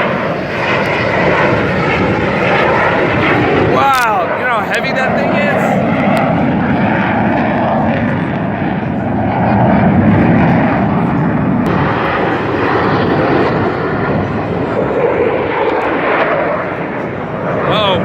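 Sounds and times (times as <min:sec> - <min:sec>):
fighter jet roaring overhead: 0:00.0 - 0:18.0.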